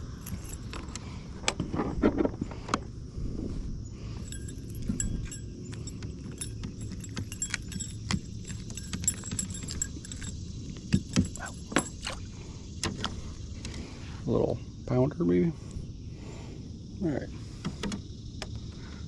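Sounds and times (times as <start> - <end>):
metal fishing lure clinking: 0.0 - 1.0, 4.2 - 12.2.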